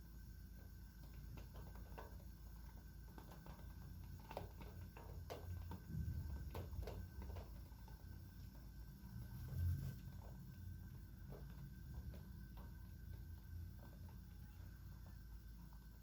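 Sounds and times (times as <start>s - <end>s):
raindrops tapping: 1.0s - 9.2s.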